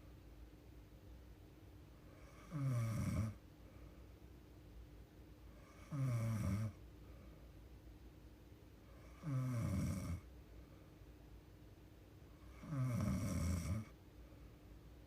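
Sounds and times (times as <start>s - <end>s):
woman snoring: 2.2s - 3.4s, 5.6s - 6.8s, 9.0s - 10.2s, 12.5s - 13.9s.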